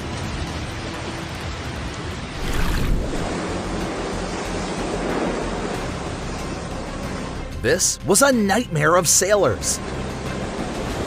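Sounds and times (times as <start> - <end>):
rushing water: 0.0 - 7.6.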